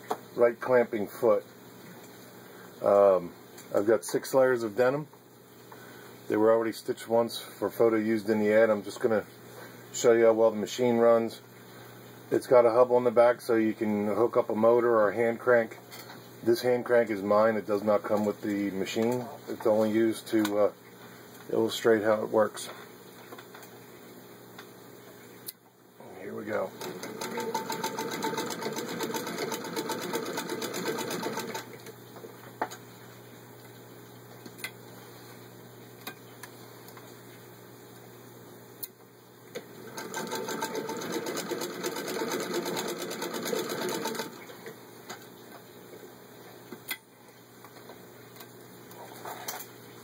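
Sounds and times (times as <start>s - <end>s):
sewing machine stitching: 26.7s - 31.8s, 39.8s - 44.4s.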